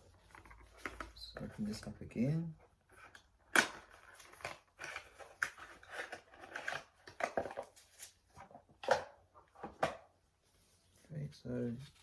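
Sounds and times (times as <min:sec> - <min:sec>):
plastic device clicks and rustles: 0:03.0 - 0:10.0.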